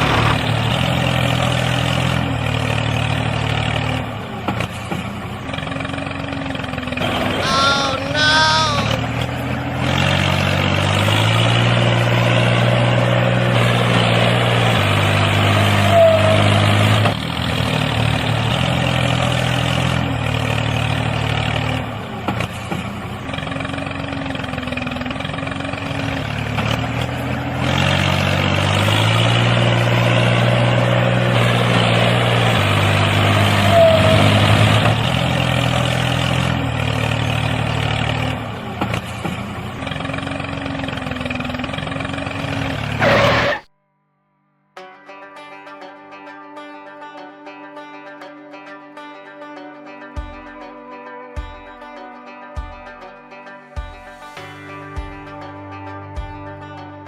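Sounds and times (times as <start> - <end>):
truck engine running: 0.0 - 43.7.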